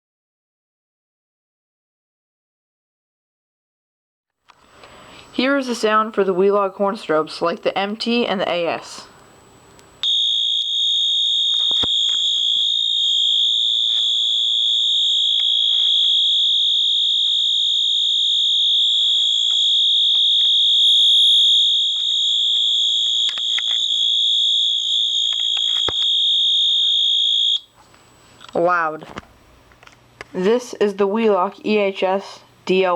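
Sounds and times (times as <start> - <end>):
steady high-pitched tone: 10.0 - 27.7.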